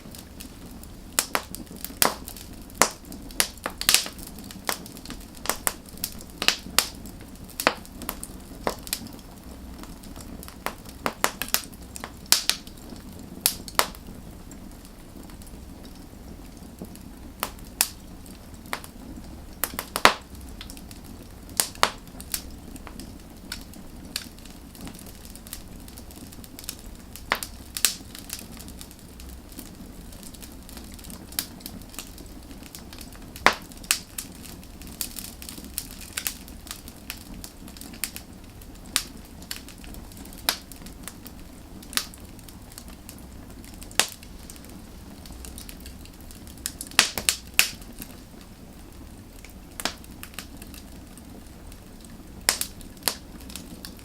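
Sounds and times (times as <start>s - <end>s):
firewood crackling and popping: 0.0s - 54.0s
low hiss of fire: 0.0s - 54.0s.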